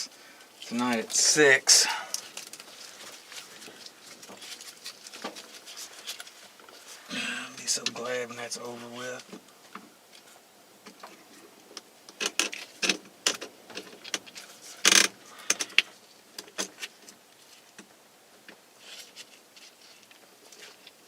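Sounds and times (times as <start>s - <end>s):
hands handling parts and wiring: 0.0s - 21.0s.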